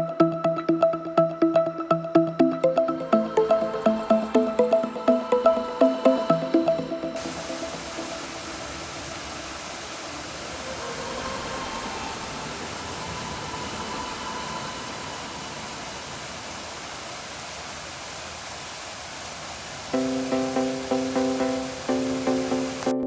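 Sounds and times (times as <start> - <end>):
steady rushing noise: 7.2 - 22.9.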